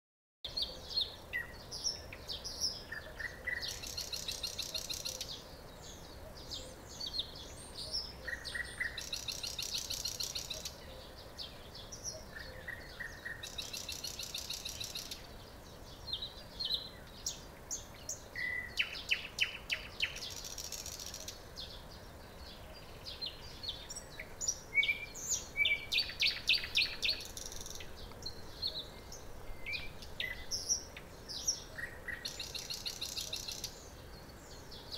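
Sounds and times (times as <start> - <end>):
nightingale singing: 0.5 - 34.9.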